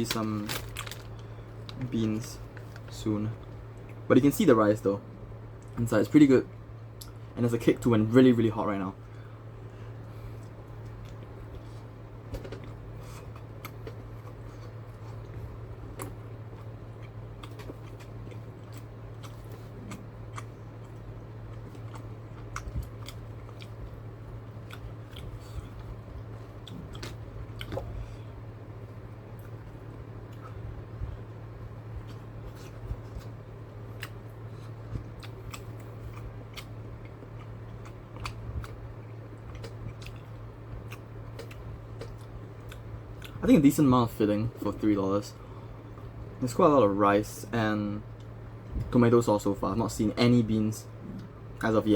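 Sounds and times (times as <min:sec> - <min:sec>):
steady low hum: 0:00.0 - 0:51.9
person chewing with wet clicks: 0:03.4 - 0:04.1, 0:06.9 - 0:07.2, 0:10.4 - 0:11.7, 0:12.4 - 0:28.2, 0:29.3 - 0:43.4, 0:48.1 - 0:49.0.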